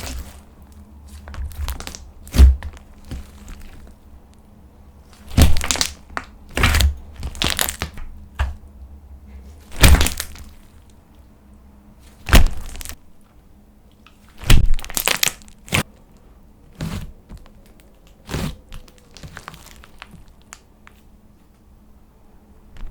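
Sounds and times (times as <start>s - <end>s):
slime popping and crackling: 0.0s - 4.0s, 5.1s - 8.6s, 9.7s - 10.8s, 12.2s - 13.0s, 14.4s - 15.8s, 16.8s - 20.7s.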